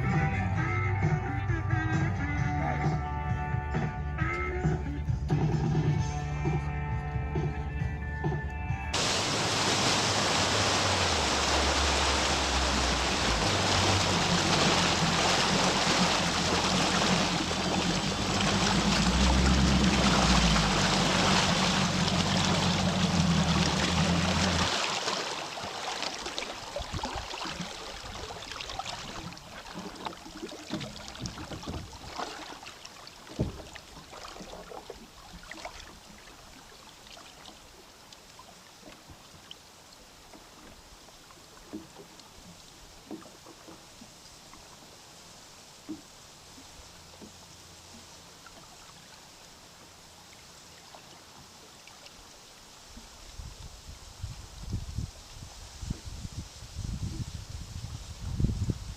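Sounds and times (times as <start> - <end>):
rushing water: 0.0 - 0.6, 8.9 - 58.9
outboard motor running: 0.0 - 36.4
wind: 0.0 - 58.9.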